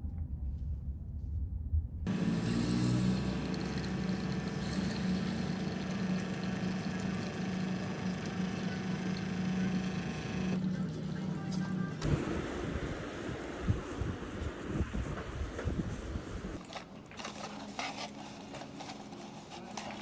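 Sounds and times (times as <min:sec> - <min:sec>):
motor humming: 0:02.1 - 0:10.7, 0:11.8 - 0:16.6.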